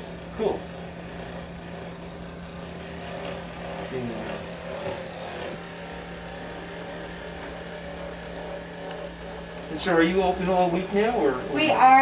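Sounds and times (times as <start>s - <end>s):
small motor humming: 0.0s - 12.0s.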